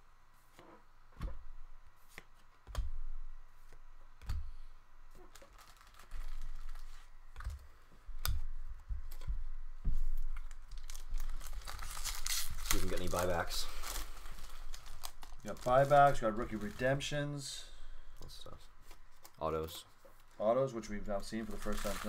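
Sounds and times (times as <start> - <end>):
card packs rustling: 5.1 - 7.7, 10.0 - 17.6, 18.2 - 22.0.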